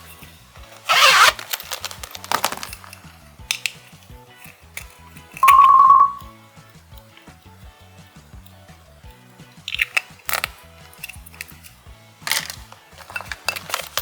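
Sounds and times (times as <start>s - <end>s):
background music with bass line: 0.0s - 14.0s
short loud tone: 5.4s - 6.3s.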